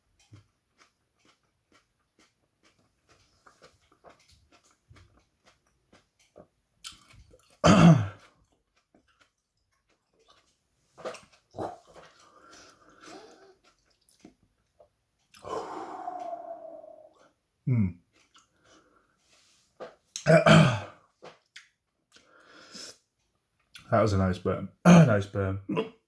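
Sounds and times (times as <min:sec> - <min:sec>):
loud sudden throat sound: 0:07.6 - 0:08.2, 0:17.7 - 0:18.0, 0:20.2 - 0:21.0
low gulp: 0:11.0 - 0:13.6, 0:15.4 - 0:18.0
man's drawn-out vocal sound: 0:15.4 - 0:18.0.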